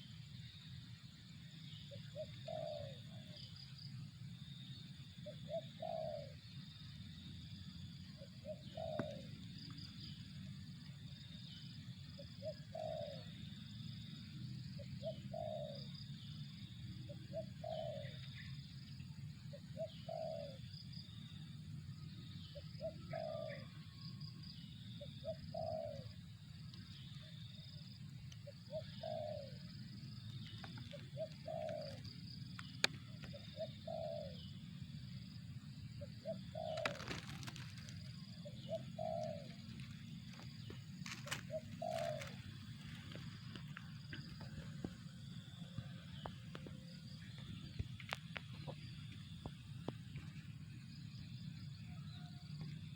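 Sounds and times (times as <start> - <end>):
dove cooing: 1.9 - 3.4, 5.2 - 6.4, 8.2 - 9.6, 12.2 - 13.4, 14.8 - 16.2, 17.0 - 18.5, 19.5 - 20.7, 22.6 - 24.0, 25.0 - 26.3, 28.4 - 34.7, 36.0 - 49.3
steady low hum: 23.6 - 52.9.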